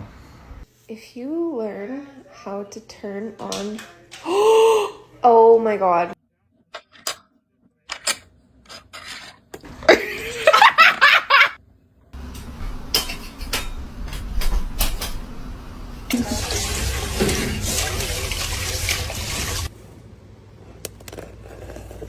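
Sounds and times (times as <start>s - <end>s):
person laughing: 9.8s - 11.6s.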